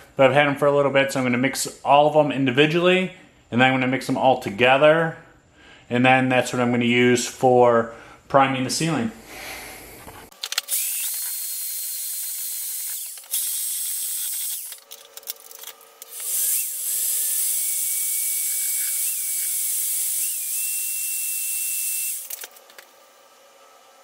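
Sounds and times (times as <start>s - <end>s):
power drill motor whine: 10.5s - 14.8s, 16.0s - 22.8s.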